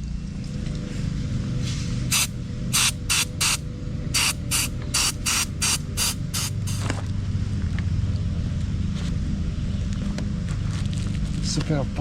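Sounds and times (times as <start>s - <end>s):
aerosol spray hissing bursts: 2.1s - 3.6s, 4.2s - 6.9s.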